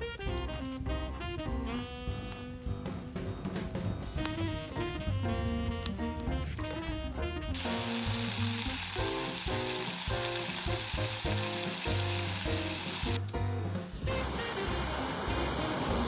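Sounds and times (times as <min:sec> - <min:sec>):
background music with a beat: 0:00.0 - 0:16.0
food sizzling in a pan: 0:07.5 - 0:16.0.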